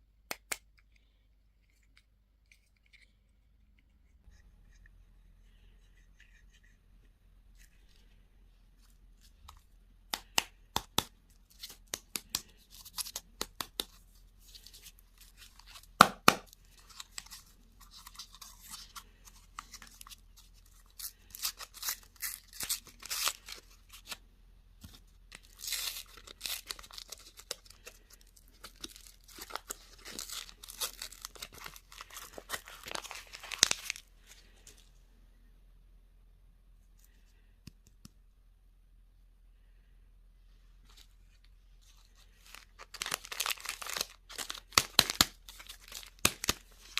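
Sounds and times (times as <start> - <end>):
candy wrapper crinkling: 9.4 - 24.2, 25.0 - 34.8, 41.9 - 46.9.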